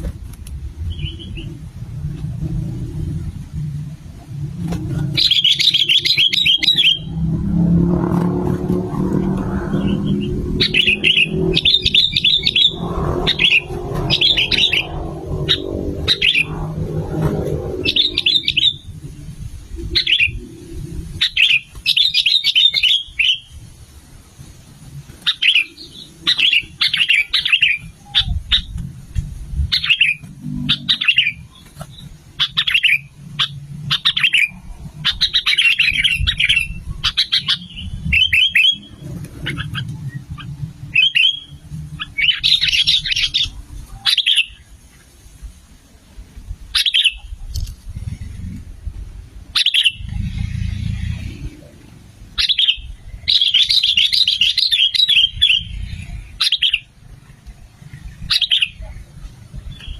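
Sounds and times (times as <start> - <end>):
low hum: 0.0 - 21.4
bird singing bubbly chirps: 5.2 - 7.2, 9.6 - 16.8, 17.7 - 19.0, 29.7 - 44.6.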